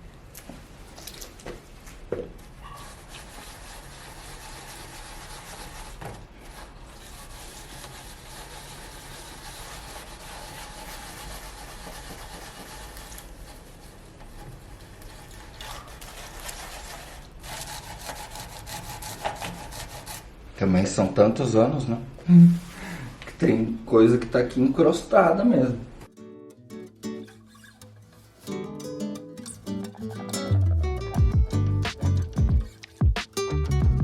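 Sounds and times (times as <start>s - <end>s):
gritty scrubbing on copper: 2.5s - 20.3s.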